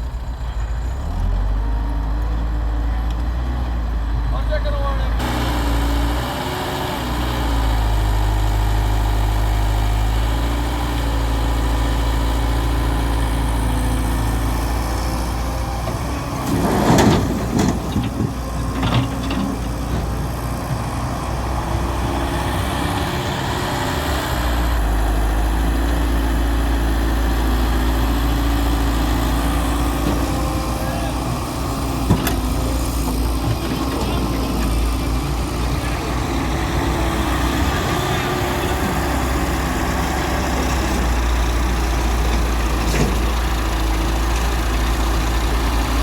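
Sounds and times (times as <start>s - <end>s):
excavator diesel engine: 0.0s - 46.0s
thuds and rattling: 16.4s - 20.9s, 31.9s - 34.3s.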